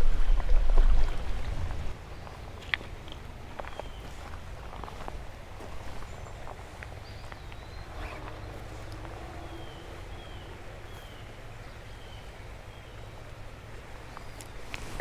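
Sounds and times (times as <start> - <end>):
wind rumbling on microphone: 0.0 - 2.6.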